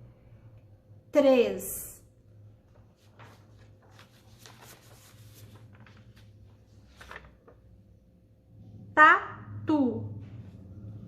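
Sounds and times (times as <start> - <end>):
faint rustling handling noises: 2.6 - 7.7
low hum: 7.8 - 11.0.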